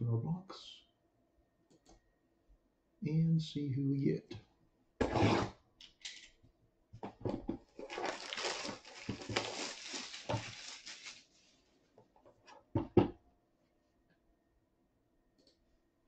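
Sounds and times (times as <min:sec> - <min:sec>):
packaging crinkling and tearing: 0:07.7 - 0:11.7.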